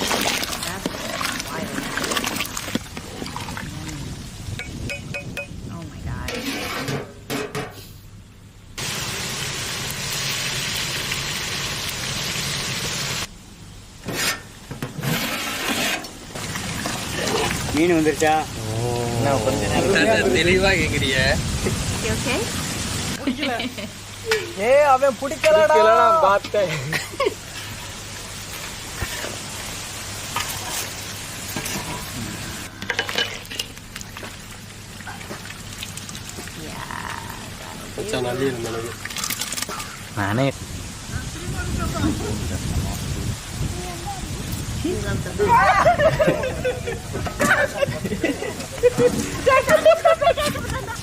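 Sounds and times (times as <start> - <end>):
food hissing in a pot: 8.8 - 13.3
food sizzling in oil: 8.8 - 13.3, 16.2 - 35.0.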